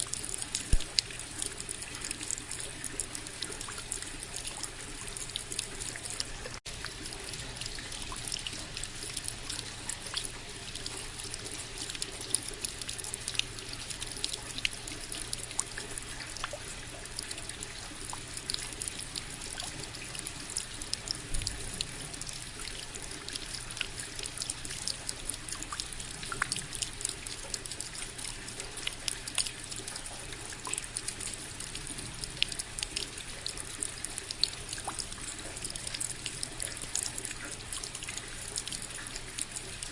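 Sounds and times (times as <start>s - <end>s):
steady rain hiss: 0.0s - 2.6s
raindrops ticking: 0.0s - 39.9s.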